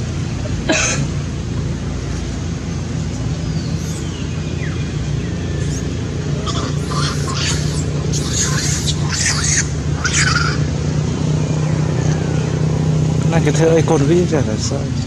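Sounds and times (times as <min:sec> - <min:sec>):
low motor rumble: 0:00.0 - 0:15.0
high gliding squeaks: 0:05.5 - 0:10.7.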